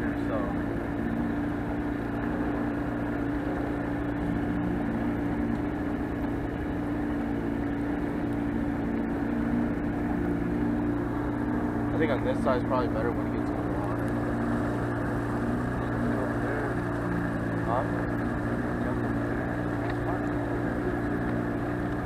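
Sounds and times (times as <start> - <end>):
boat motor running: 0.0 - 22.0.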